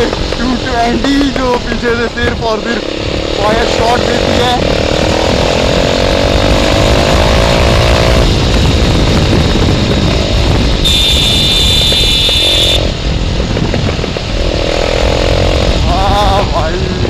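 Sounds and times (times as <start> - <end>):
exhaust pops and crackles: 0.0 - 2.6, 8.2 - 14.6
motorcycle engine accelerating: 0.0 - 17.0
wind rumble on microphone: 0.0 - 17.0
high steady tone: 10.8 - 12.9.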